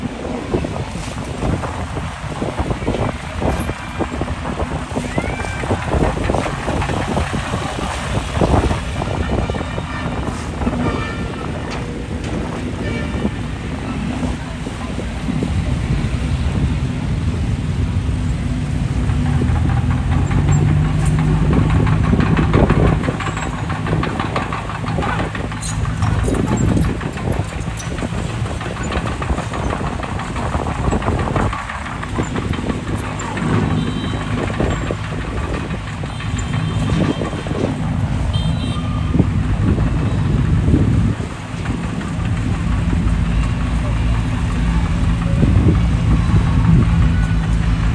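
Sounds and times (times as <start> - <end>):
bulldozer diesel engine: 0.0 - 47.9
clanking and knocking: 0.1 - 47.9.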